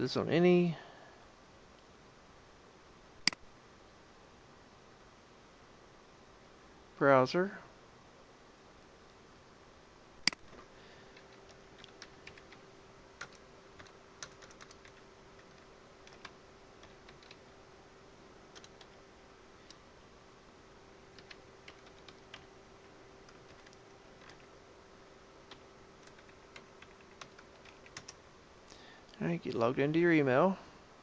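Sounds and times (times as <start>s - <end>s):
faint steady hum: 0.0s - 31.0s
loud sharp click: 10.2s - 10.4s
keyboard typing: 11.2s - 12.6s, 13.2s - 17.5s, 18.5s - 19.0s, 21.1s - 22.5s, 23.2s - 24.5s, 25.4s - 28.2s.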